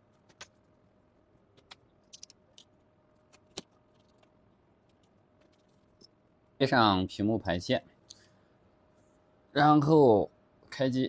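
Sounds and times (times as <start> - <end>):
faint steady hum: 0.0 - 11.0
small tools clicking and tapping: 1.6 - 4.3.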